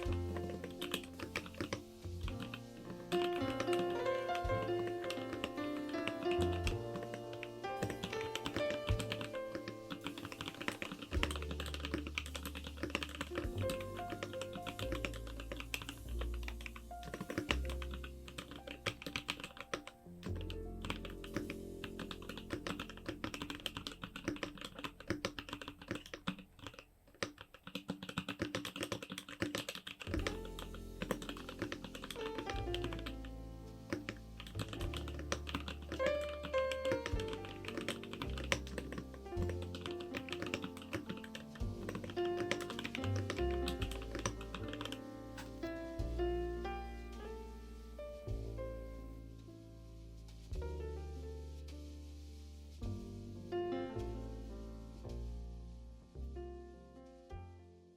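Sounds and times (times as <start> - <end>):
mechanical keyboard typing: 0.0 - 4.2, 4.9 - 33.2, 33.9 - 45.7
background music with bass: 41.4 - 57.6.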